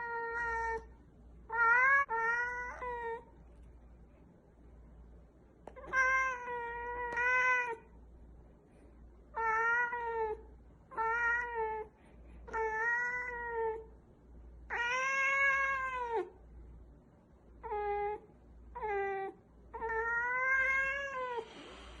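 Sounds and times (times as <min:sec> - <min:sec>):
cat meowing: 0:00.0 - 0:00.9, 0:01.5 - 0:03.3, 0:05.7 - 0:07.9, 0:09.4 - 0:11.9, 0:12.5 - 0:13.9, 0:14.7 - 0:16.3, 0:18.8 - 0:21.5.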